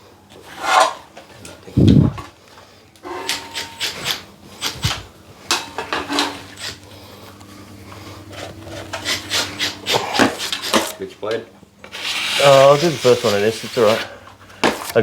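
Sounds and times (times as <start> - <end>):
drywall blade scraping: 0.4 - 1.1, 8.4 - 11.0, 11.8 - 14.9.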